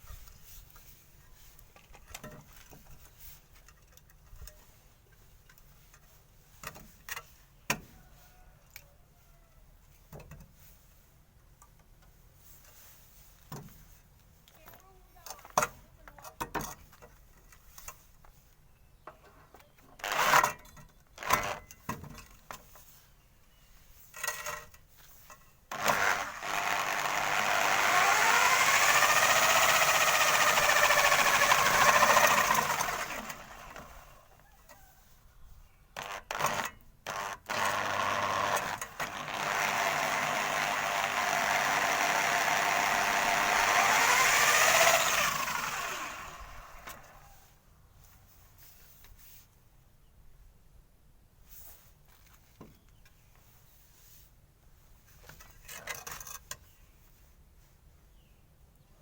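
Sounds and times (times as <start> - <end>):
motor-driven rig whining: 25.7 - 34.2, 36.0 - 47.1.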